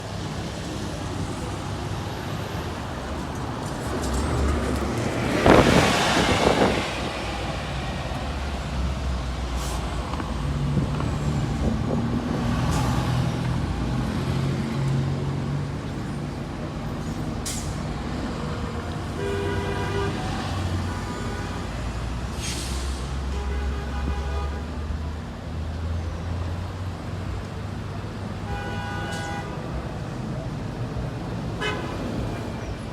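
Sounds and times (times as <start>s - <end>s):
air brake hiss: 9.6s - 10.0s, 17.0s - 17.8s, 22.3s - 23.2s.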